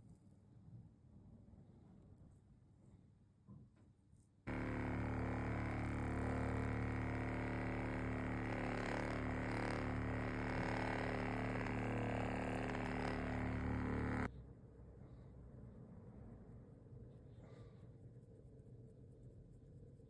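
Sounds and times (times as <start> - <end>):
small electric motor humming: 4.5 - 14.3.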